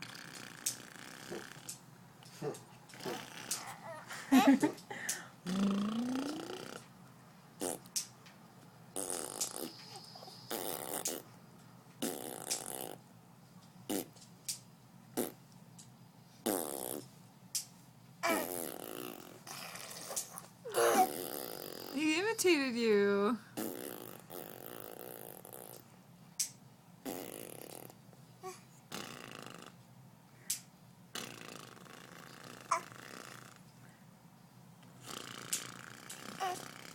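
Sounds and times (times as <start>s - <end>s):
imitation fart noises: 0.0s - 1.8s, 2.4s - 4.0s, 5.4s - 6.9s, 7.6s - 8.1s, 9.0s - 11.4s, 12.0s - 13.1s, 13.9s - 14.2s, 15.1s - 15.4s, 16.4s - 17.2s, 18.2s - 22.4s, 23.6s - 25.9s, 27.0s - 28.0s, 28.9s - 29.8s, 31.1s - 33.7s, 35.0s - 36.9s.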